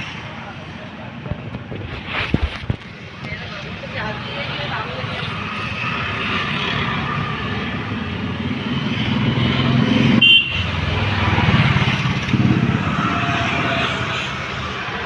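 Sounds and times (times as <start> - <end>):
road traffic engines: 0.0 - 15.0
car horn toot: 10.2 - 10.7.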